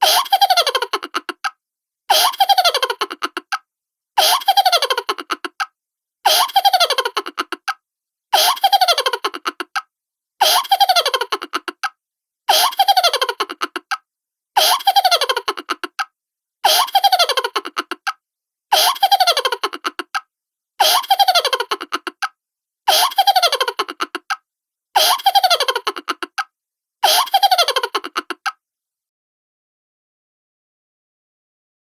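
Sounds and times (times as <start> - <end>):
cartoon-style laugh: 0.0 - 1.5, 2.1 - 3.6, 4.2 - 5.7, 6.3 - 7.8, 8.4 - 9.8, 10.4 - 11.9, 12.5 - 14.0, 14.6 - 16.0, 16.7 - 18.1, 18.8 - 20.2, 20.8 - 22.3, 22.9 - 24.4, 25.0 - 28.6.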